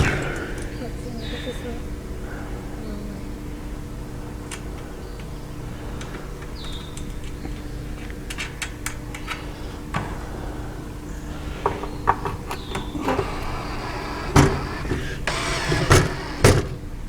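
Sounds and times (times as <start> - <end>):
steady low hum: 0.0 - 17.0
wooden panels clicking and knocking: 4.4 - 17.0.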